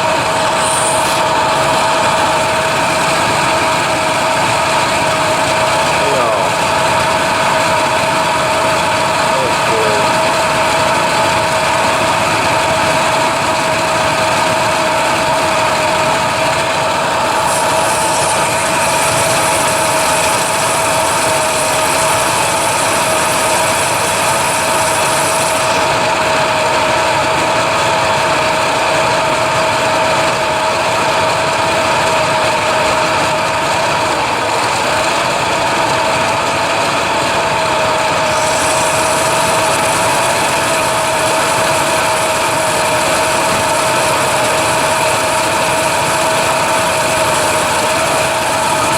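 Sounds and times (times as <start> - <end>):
motor whining: 0.0 - 13.4, 38.0 - 48.9
hiss: 0.3 - 2.3, 17.2 - 25.9, 38.2 - 48.9.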